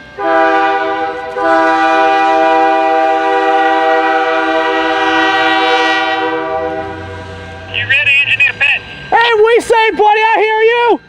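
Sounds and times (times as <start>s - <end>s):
locomotive air horn chord: 0.0s - 7.7s
low engine note: 0.2s - 9.3s.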